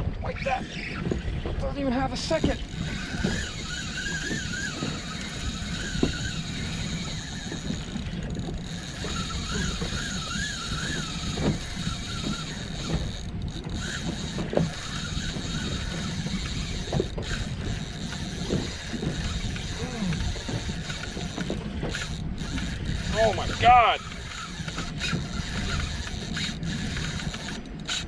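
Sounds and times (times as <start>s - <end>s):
wind and water rumble: 0.0s - 28.0s
fishing reel gears whirring: 0.4s - 28.0s
sharp reel clicks: 2.3s - 28.0s.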